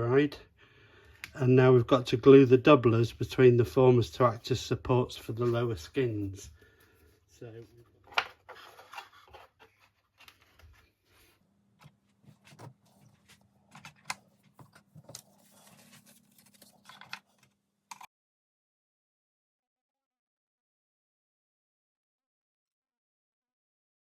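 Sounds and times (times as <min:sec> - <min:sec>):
wooden parts clicking and tapping: 0:11.8 - 0:18.1.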